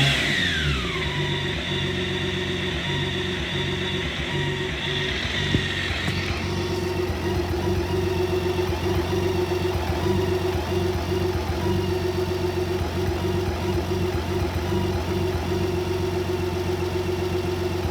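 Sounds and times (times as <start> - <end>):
motorcycle engine idling roughly: 1.0 - 17.9.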